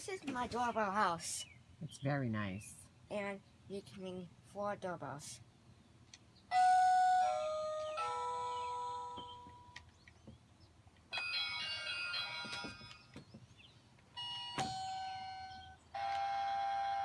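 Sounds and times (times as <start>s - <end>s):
electronic doorbell chime melody: 6.5s - 9.8s, 11.1s - 13.1s, 14.2s - 17.0s.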